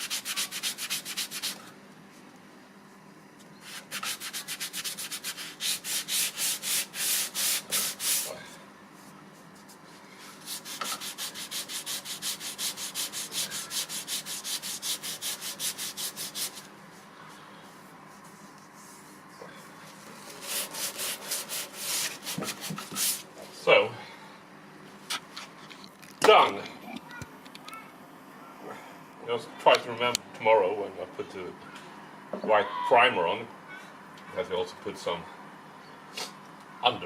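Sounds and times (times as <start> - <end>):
sandpaper rubbing on wood: 0.0 - 1.6, 3.6 - 8.4, 10.4 - 16.7, 20.2 - 23.2.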